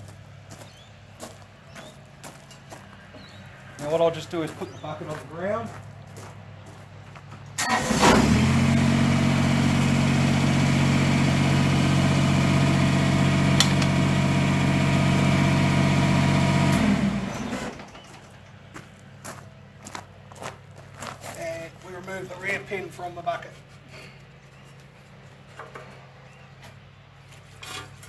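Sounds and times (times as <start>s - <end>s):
diesel tractor engine: 6.5s - 20.9s
sharp click: 13.6s - 14.0s.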